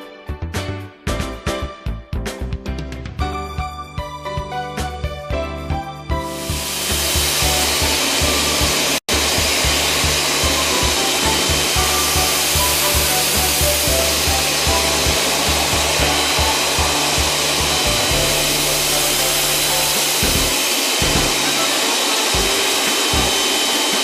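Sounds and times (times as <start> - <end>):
cleaning equipment rushing hiss: 6.2 - 24.0.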